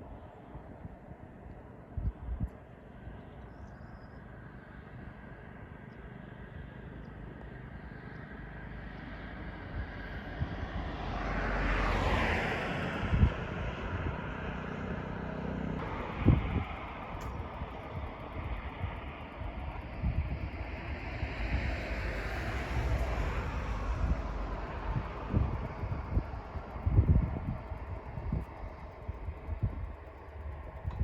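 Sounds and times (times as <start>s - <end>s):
wind buffeting microphone: 0.0s - 3.3s, 9.4s - 14.9s, 15.8s - 31.0s
vehicle passing by: 9.1s - 17.2s, 20.8s - 28.5s
steady rushing noise: 15.8s - 31.0s.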